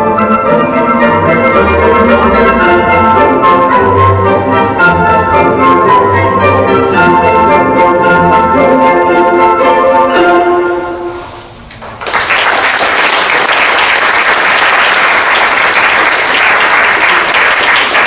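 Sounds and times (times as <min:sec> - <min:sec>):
audience applause: 0:11.8 - 0:18.0.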